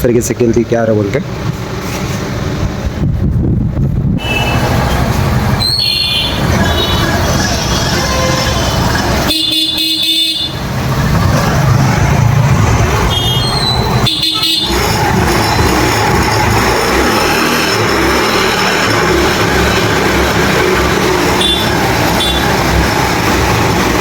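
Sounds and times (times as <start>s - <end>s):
vehicle horn honking: 4.2s - 5.0s, 5.6s - 10.6s, 13.1s - 15.0s, 21.3s - 22.6s
scooter engine running: 4.2s - 24.0s.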